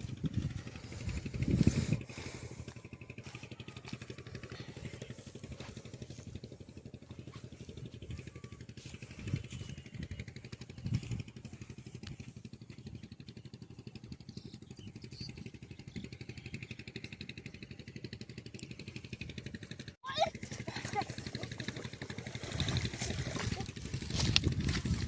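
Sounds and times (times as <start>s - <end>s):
small engine chugging: 0.0s - 25.0s.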